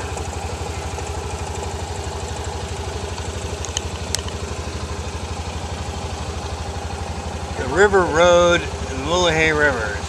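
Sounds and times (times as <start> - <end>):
vehicle engine running: 0.0 - 10.0
sharp clicks: 3.2 - 4.4.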